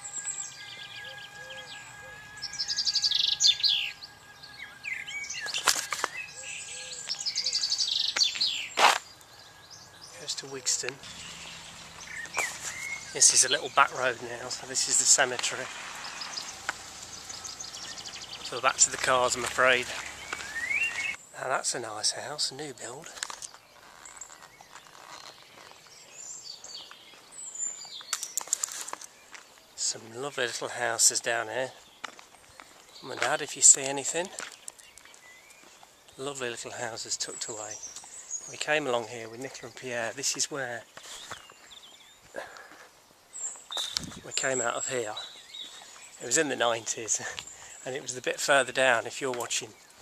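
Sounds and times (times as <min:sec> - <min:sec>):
songbird trilling: 0:00.0 - 0:21.3, 0:32.9 - 0:42.3, 0:43.3 - 0:50.0
faint birdsong chirps and whistles: 0:00.0 - 0:50.0
quiet outdoor background noise: 0:00.0 - 0:50.0.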